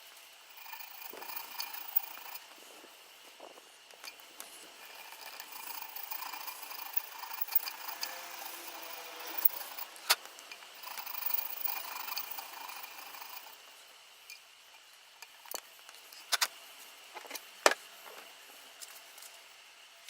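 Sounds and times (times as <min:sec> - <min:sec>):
file rasping on metal: 0:00.5 - 0:02.4, 0:04.8 - 0:09.9, 0:10.8 - 0:13.6.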